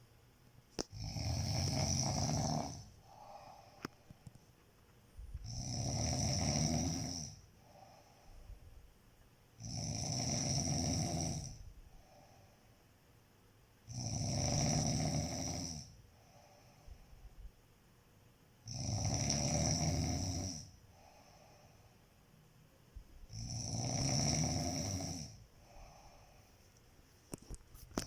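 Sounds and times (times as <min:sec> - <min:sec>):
person snoring: 0:00.8 - 0:03.9, 0:05.4 - 0:08.1, 0:09.6 - 0:12.3, 0:13.9 - 0:16.9, 0:18.6 - 0:21.8, 0:23.3 - 0:26.4.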